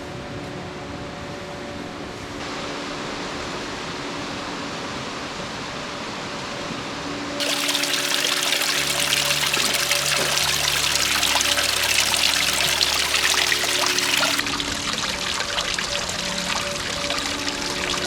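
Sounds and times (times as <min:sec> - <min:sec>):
waterfall rushing: 0:07.4 - 0:18.0.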